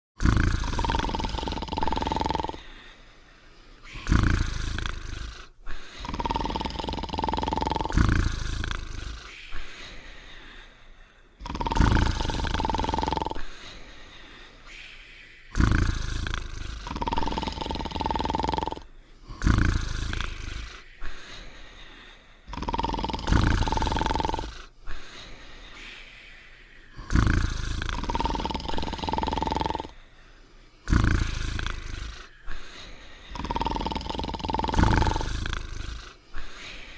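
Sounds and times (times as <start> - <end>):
cartoon rumbling snore: 0.2 - 2.8, 3.9 - 9.4, 11.4 - 13.6, 15.5 - 20.9, 22.5 - 24.7, 27.0 - 30.0, 30.8 - 36.8.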